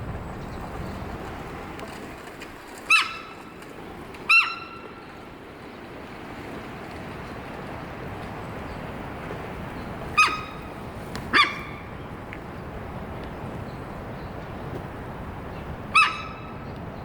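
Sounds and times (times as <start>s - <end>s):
deer alarm calls: 2.9s - 3.6s, 4.2s - 5.2s, 10.0s - 12.2s, 15.8s - 16.7s.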